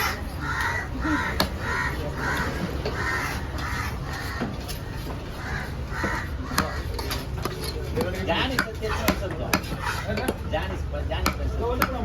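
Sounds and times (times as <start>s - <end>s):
crows cawing: 0.0s - 7.0s.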